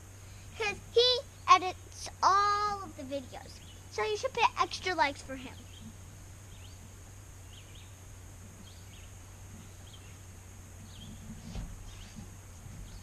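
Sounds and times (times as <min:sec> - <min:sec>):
low steady hum: 0:00.0 - 0:13.0
small birds chirping: 0:00.1 - 0:13.0
soft thump: 0:11.2 - 0:13.0.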